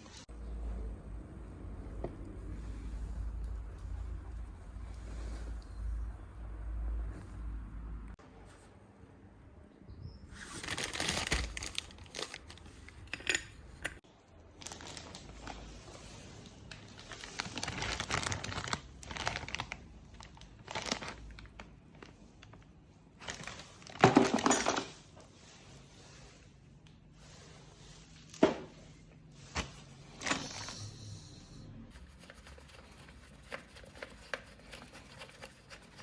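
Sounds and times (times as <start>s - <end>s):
plastic parts crinkling and rustling: 10.5s - 13.8s, 14.5s - 25.4s.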